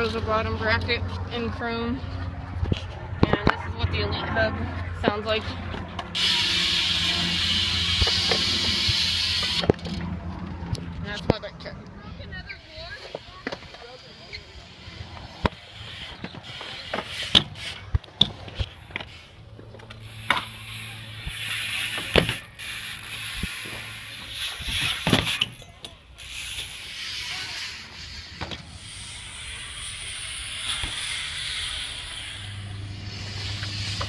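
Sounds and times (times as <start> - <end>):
bike tyres rolling hiss: 6.1 - 10.2, 12.6 - 25.6, 26.2 - 34.0.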